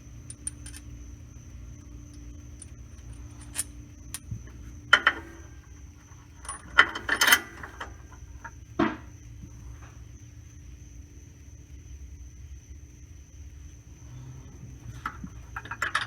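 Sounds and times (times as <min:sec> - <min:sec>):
metal tools clinking: 0:00.0 - 0:01.0, 0:01.8 - 0:05.6, 0:06.3 - 0:08.0, 0:15.0 - 0:16.0.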